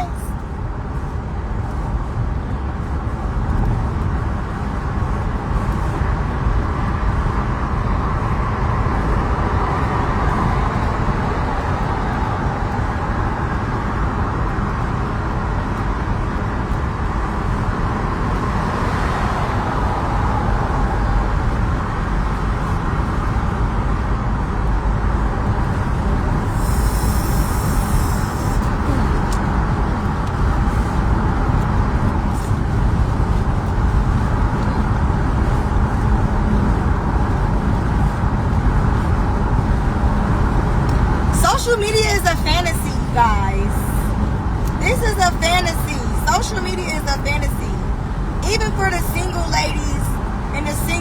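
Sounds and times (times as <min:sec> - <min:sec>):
car engine rumble: 0:00.0 - 0:51.0
tyre and wind hiss: 0:26.0 - 0:29.7.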